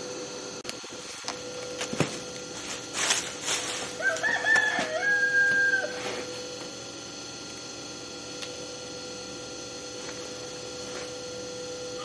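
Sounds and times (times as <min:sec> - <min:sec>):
rooster crowing: 0:03.8 - 0:06.3.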